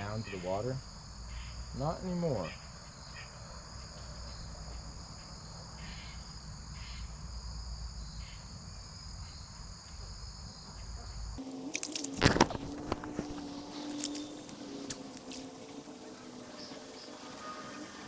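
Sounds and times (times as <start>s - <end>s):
crickets trilling: 0.0s - 18.0s.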